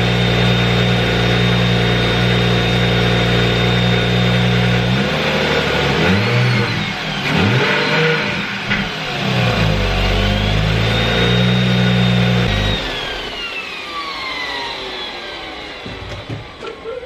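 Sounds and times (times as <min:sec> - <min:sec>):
car engine revving: 0:00.0 - 0:13.4.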